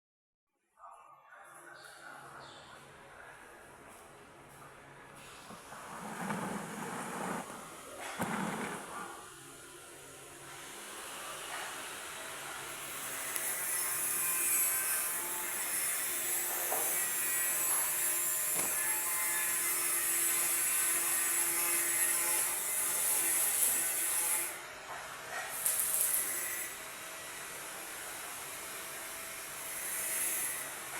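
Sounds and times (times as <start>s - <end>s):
arc welding crackling hiss: 25.6s - 26.8s.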